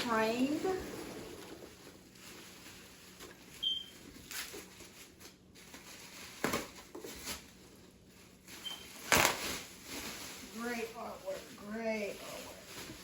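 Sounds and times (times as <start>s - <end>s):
packaging taps and rustles: 3.1s - 7.6s, 8.5s - 9.6s.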